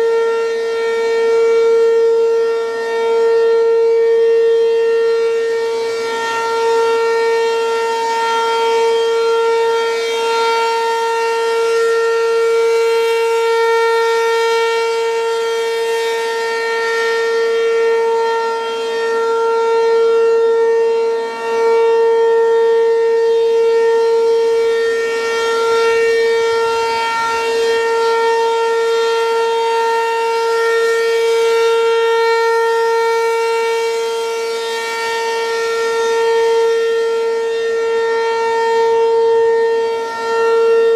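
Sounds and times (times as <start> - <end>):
warning siren steady tone: 0.0 - 40.9.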